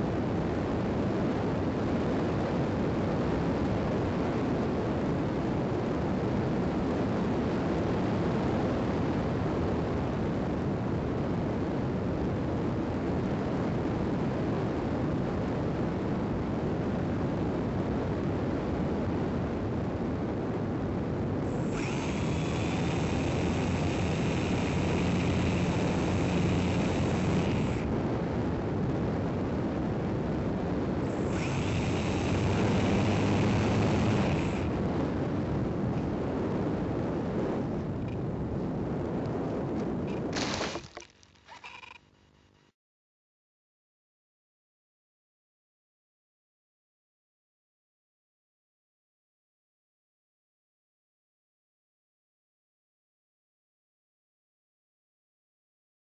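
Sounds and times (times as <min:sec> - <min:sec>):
electric motor high whine: 0:21.4 - 0:28.0, 0:31.0 - 0:34.9, 0:40.1 - 0:42.6.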